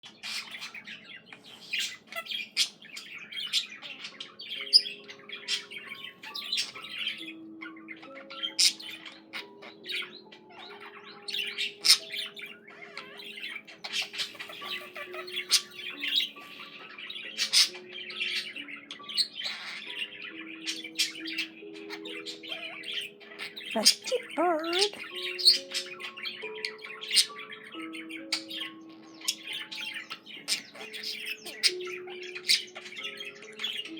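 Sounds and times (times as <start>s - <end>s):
budgerigar chattering and warbling: 0.0s - 33.9s.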